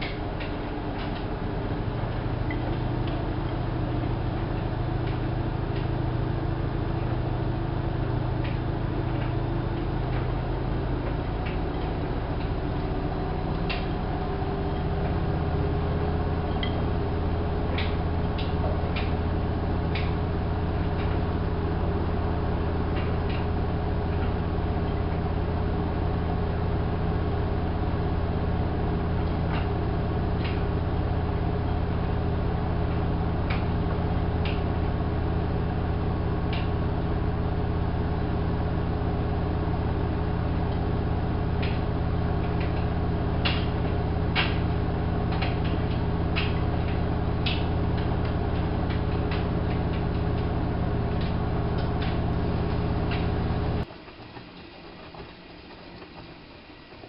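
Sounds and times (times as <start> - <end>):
washing machine motor hum: 0.0 - 57.0.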